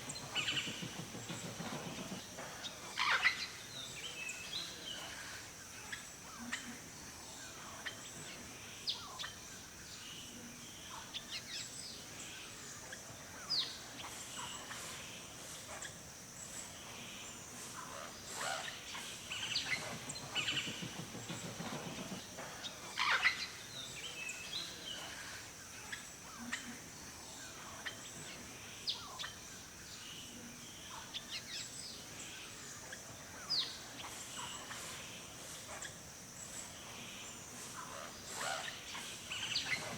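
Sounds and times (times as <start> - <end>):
birds chirping and calling: 0.0 - 5.2, 17.8 - 25.4, 33.0 - 39.9
steady high hiss: 0.0 - 39.9.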